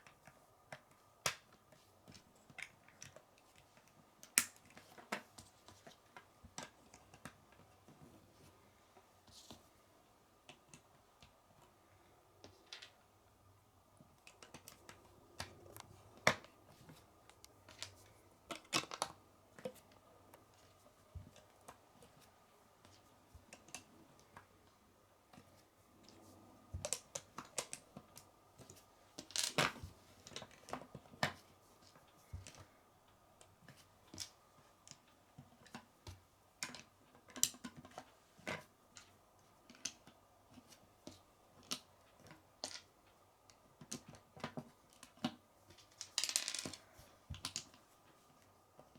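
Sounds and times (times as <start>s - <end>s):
plastic bricks clicking: 46.0s - 46.8s.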